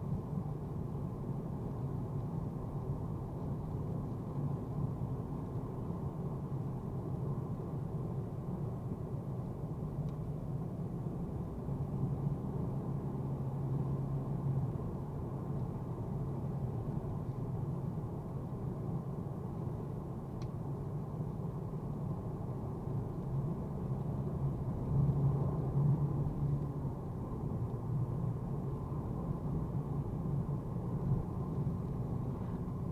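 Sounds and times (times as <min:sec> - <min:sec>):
car engine drone inside car: 0:00.0 - 0:32.9
faint click: 0:20.4 - 0:20.6
road noise: 0:22.2 - 0:32.9.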